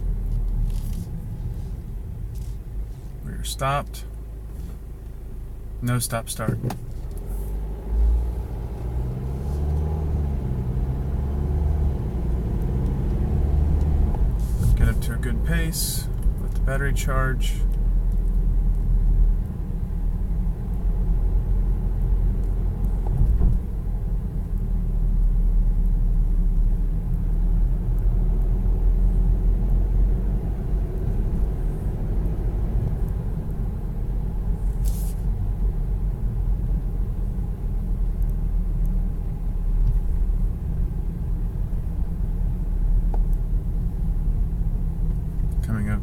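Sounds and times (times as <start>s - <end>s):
car engine and road noise: 0.0s - 46.0s
brief hiss: 34.7s - 35.3s.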